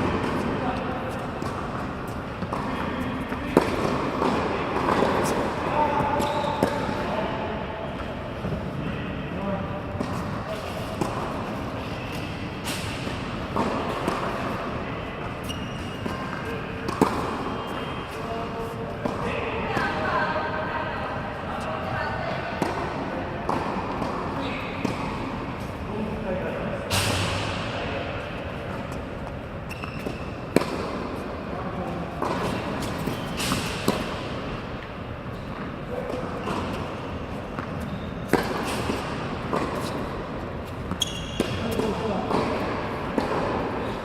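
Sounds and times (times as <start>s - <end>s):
tennis balls bouncing on court: 0.0s - 7.2s, 9.9s - 10.4s, 11.0s - 20.1s, 22.4s - 25.8s, 26.9s - 44.0s
tennis balls hit by rackets: 0.0s - 8.7s, 9.9s - 20.0s, 22.4s - 25.9s, 26.8s - 44.0s
steady background noise: 0.0s - 44.0s
shoe squeaks: 5.2s - 7.0s, 10.2s - 13.2s, 15.2s - 18.8s, 28.8s - 30.6s, 32.4s - 34.0s, 35.3s - 42.2s.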